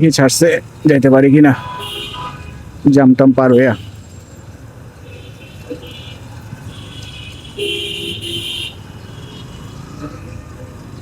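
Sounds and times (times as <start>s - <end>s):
vehicle horn honking: 1.6s - 2.6s, 5.1s - 9.7s.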